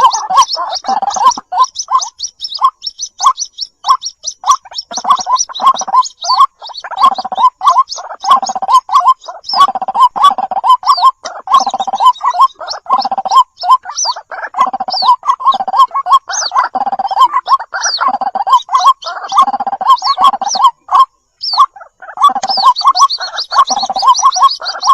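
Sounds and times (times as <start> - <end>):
bird harsh croaking calls: 0.0 - 24.9
thin high bird chirps: 0.0 - 24.9.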